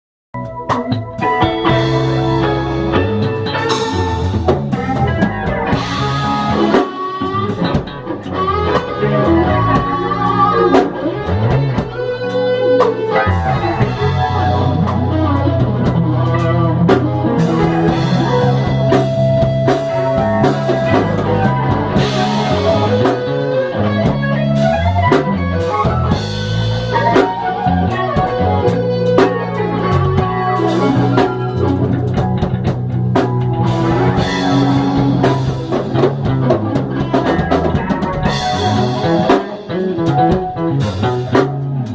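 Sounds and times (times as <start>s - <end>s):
blues rock band music: 0.4s - 41.9s
electric bass solo: 0.4s - 41.9s
drum hits: 12.8s - 24.3s, 31.1s - 41.8s.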